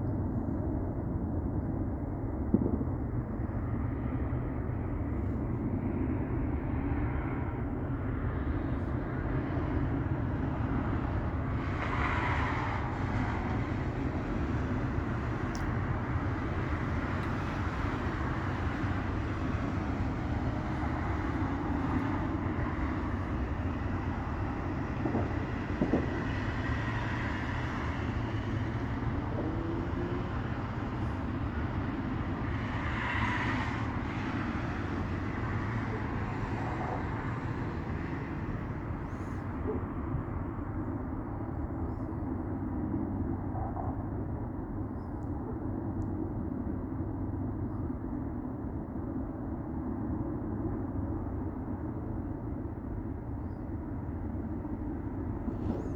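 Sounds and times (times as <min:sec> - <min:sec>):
train rumbling past: 0:03.4 - 0:41.8, 0:53.8 - 0:55.9
faint distant pops: 0:24.9 - 0:31.3.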